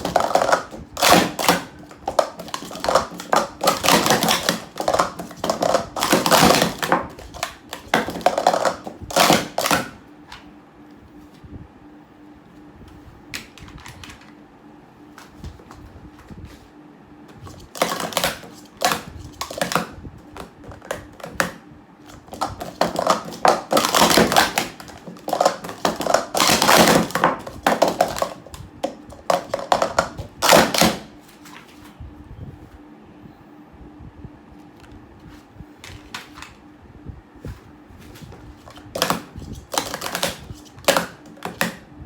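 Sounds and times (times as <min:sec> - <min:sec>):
plastic cups clattering: 0:00.0 - 0:10.0, 0:17.5 - 0:31.1, 0:38.6 - 0:41.8.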